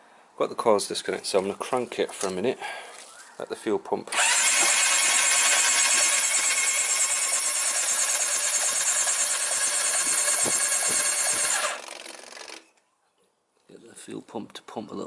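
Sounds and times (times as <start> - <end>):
electric starter cranking engine: 4.1 - 12.7.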